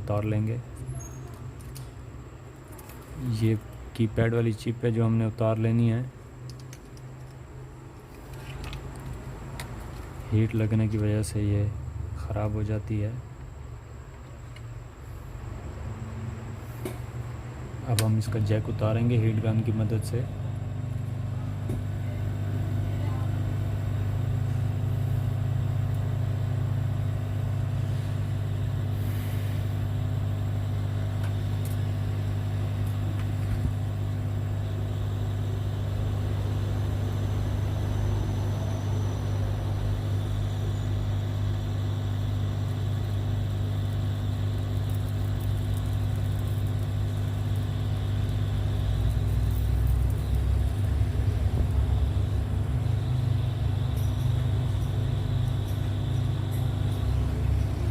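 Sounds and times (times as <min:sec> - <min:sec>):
heat gun blower drone: 0:14.8 - 0:57.9.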